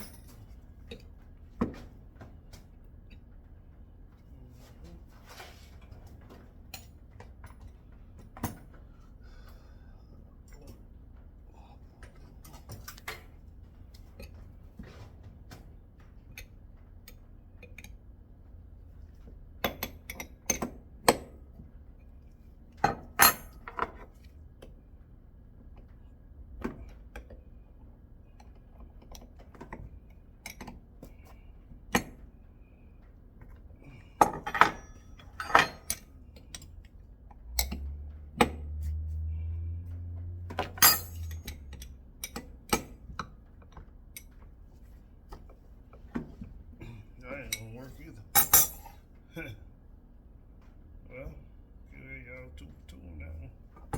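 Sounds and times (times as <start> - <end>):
metal parts and tools clinking: 34.2 - 36.7, 40.5 - 43.0, 48.3 - 49.0.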